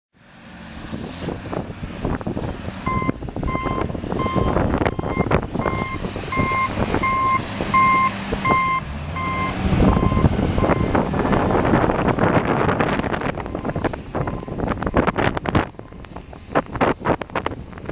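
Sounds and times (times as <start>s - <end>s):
tractor engine running: 0.7s - 17.9s
tractor reversing alarm beeping: 2.8s - 11.0s, 13.4s - 16.0s.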